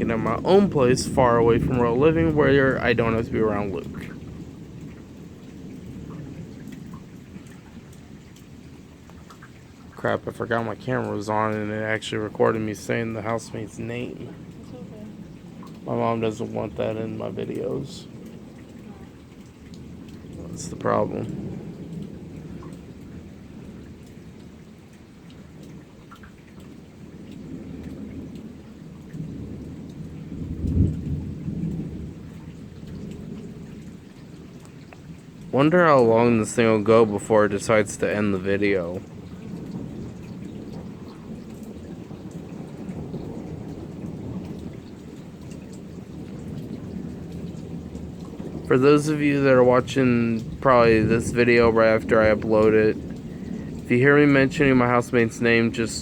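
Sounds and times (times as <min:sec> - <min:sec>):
steady rain: 0:00.0 - 0:56.0
thunder rumble: 0:00.0 - 0:56.0
faint ticks of drops: 0:04.8 - 0:10.1, 0:34.6 - 0:35.5.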